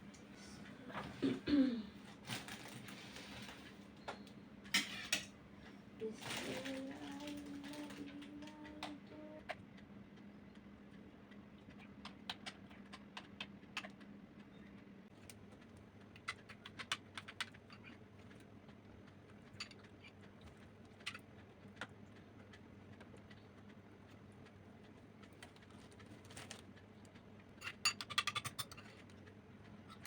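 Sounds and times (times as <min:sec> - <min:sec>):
low steady hum: 0:00.0 - 0:30.0
cutlery tapping dishes: 0:27.6 - 0:29.0.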